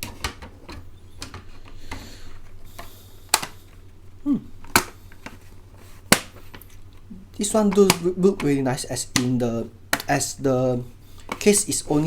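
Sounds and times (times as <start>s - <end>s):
plastic case clicks: 2.8s - 3.6s, 4.6s - 5.4s, 7.6s - 10.1s.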